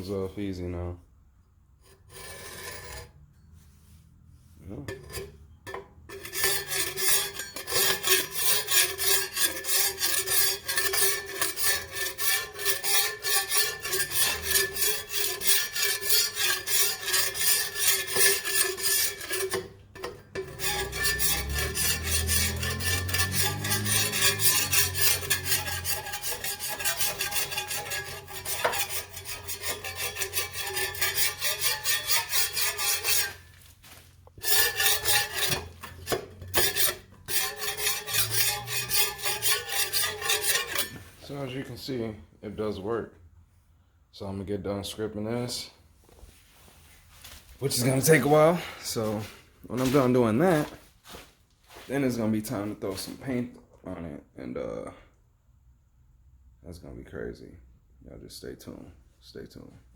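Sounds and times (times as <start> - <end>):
paint scraped off metal: 6.1 - 41.5.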